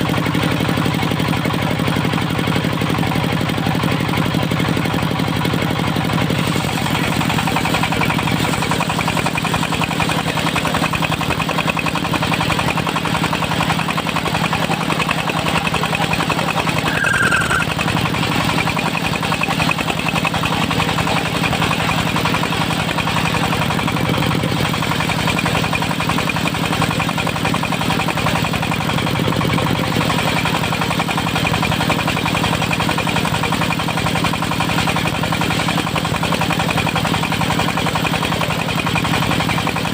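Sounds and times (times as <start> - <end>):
diesel engine running: 0.0 - 39.9
high squeak: 16.8 - 17.9.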